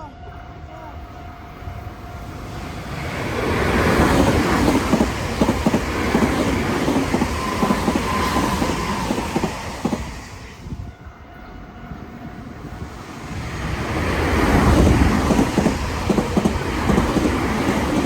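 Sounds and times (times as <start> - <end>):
electric train passing: 0.0 - 18.0
wheels clacking over rail joints: 2.5 - 10.5, 12.5 - 18.0.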